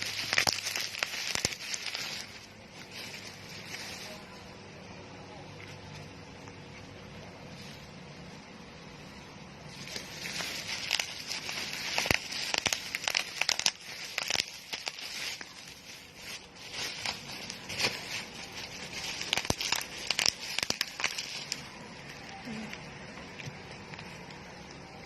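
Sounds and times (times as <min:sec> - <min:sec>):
packaging crinkling and crackling: 0:00.0 - 0:04.6, 0:09.7 - 0:25.0.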